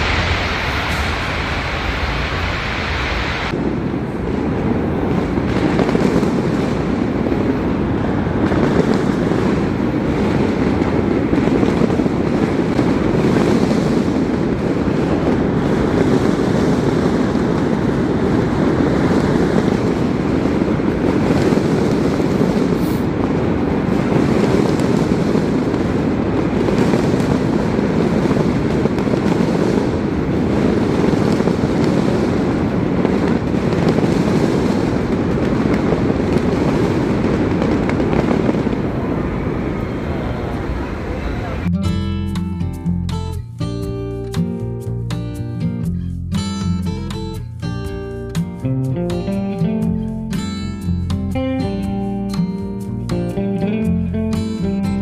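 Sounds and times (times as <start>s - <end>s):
fireworks booming and crackling: 0.0s - 41.7s.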